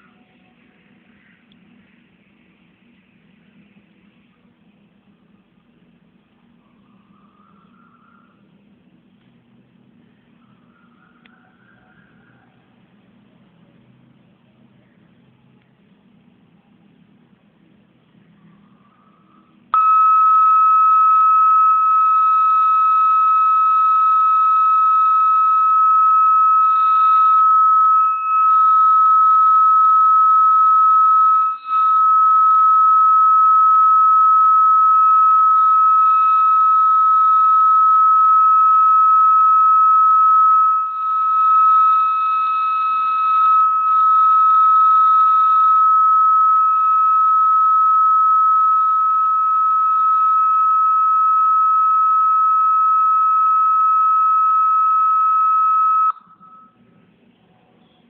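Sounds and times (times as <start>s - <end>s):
laptop high-pitched beep: 19.8s - 56.8s.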